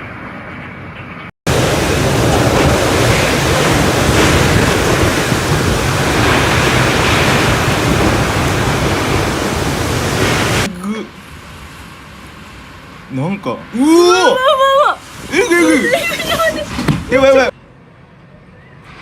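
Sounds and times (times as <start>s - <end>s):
strong wind on microphone: 1.5s - 10.7s.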